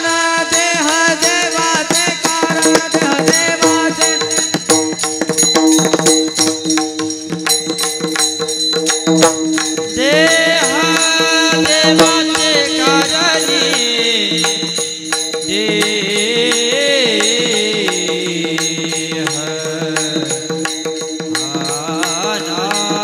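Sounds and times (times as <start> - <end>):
fast percussion beat: 0.0 - 23.0
person singing long held notes: 9.9 - 20.5.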